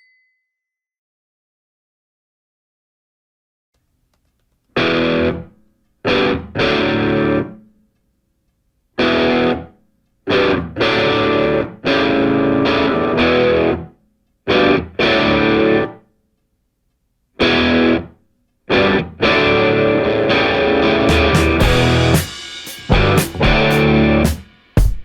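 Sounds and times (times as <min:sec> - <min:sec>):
distorted electric guitar chords: 0:04.8 - 0:05.5, 0:06.1 - 0:07.6, 0:09.0 - 0:09.7, 0:10.3 - 0:13.9, 0:14.5 - 0:16.0, 0:17.4 - 0:18.1, 0:18.7 - 0:24.5.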